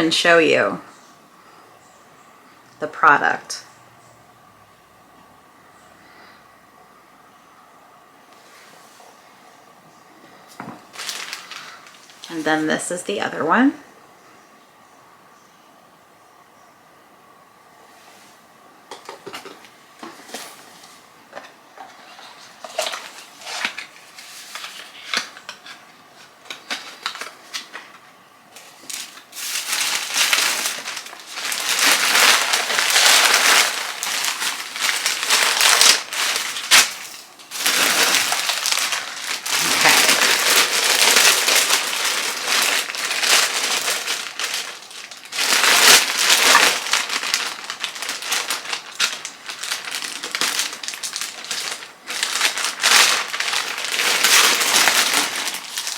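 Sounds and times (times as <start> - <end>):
packaging rustling and clicking: 10.5 - 12.4, 21.4 - 28.0, 28.6 - 55.9
wrapping crinkling: 10.6 - 13.2, 21.8 - 55.9.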